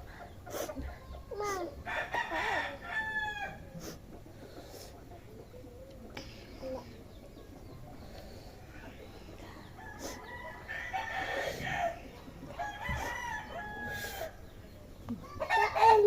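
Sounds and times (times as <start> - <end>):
rooster crowing: 1.9 - 3.7, 9.8 - 12.0, 12.6 - 14.4, 15.4 - 16.0.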